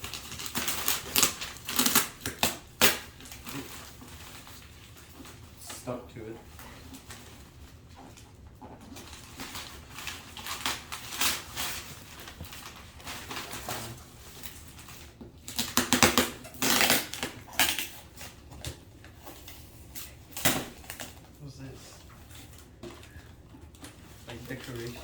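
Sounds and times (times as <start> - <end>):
packaging being torn open: 0.0 - 4.0, 9.4 - 18.8, 20.0 - 21.2.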